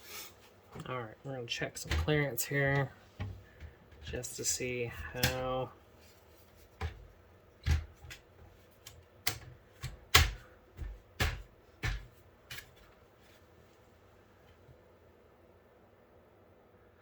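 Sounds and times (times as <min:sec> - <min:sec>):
radiator clicking against metal frame: 0:05.0 - 0:05.6.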